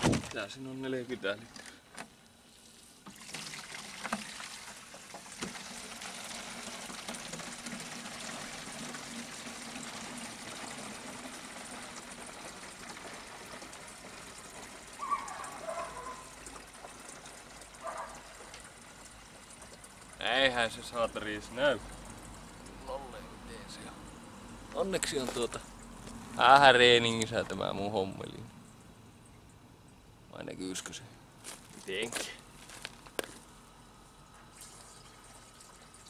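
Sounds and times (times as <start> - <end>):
coolant trickling into container: 2.3 - 27.7, 34.2 - 36.0.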